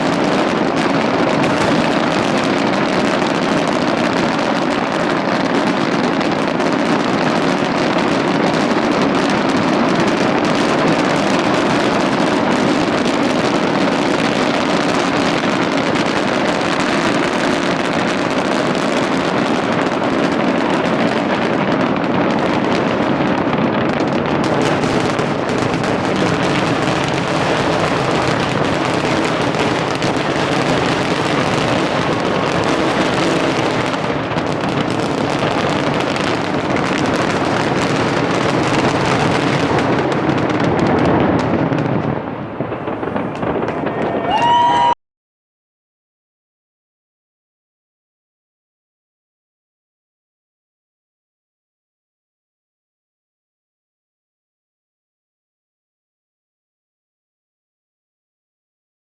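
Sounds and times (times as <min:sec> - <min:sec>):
fireworks bangs and crackles: 0:00.0 - 0:45.0.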